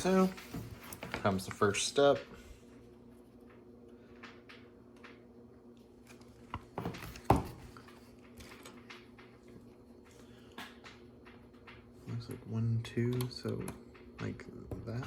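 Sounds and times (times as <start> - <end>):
refrigerator hum: 0.0 - 15.0.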